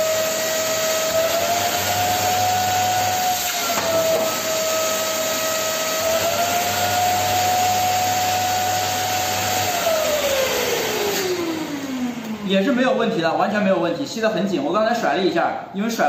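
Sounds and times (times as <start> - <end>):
vacuum cleaner motor whine: 0.0 - 13.2.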